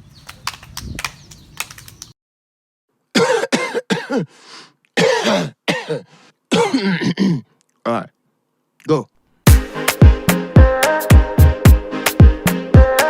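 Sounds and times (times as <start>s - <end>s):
clicks: 0.2s - 2.1s
person coughing: 3.2s - 4.3s, 5.0s - 7.5s
low background noise: 4.7s - 9.4s.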